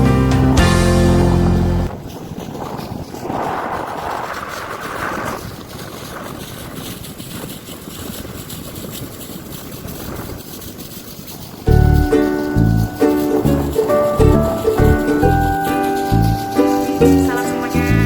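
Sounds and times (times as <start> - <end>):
boat engine running: 0.0 - 2.0, 11.4 - 18.0
wind on microphone: 0.4 - 18.0.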